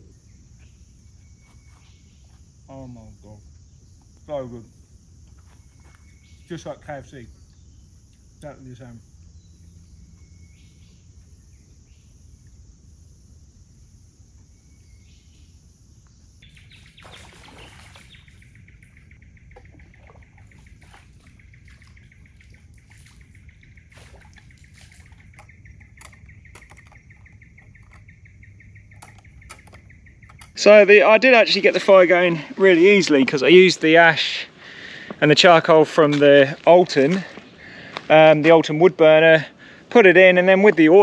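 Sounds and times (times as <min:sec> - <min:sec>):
high-pitched pulsing wildlife trill: 0:00.0 - 0:34.6
soft clicks: 0:28.8 - 0:30.6.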